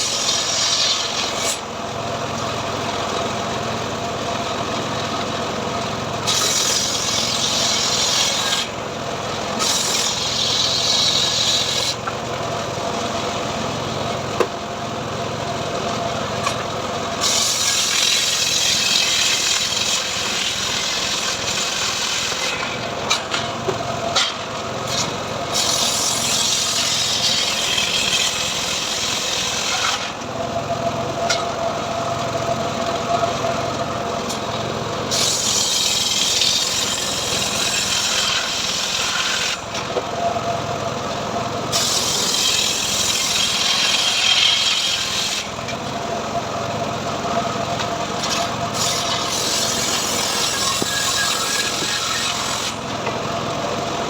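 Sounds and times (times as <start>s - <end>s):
saw blade rasping through wood: 0.0s - 1.6s, 6.2s - 8.8s, 9.5s - 12.0s, 17.2s - 23.5s, 24.2s - 30.2s, 35.1s - 39.9s, 41.7s - 45.8s, 48.2s - 52.9s
sawmill engine humming: 0.0s - 54.0s.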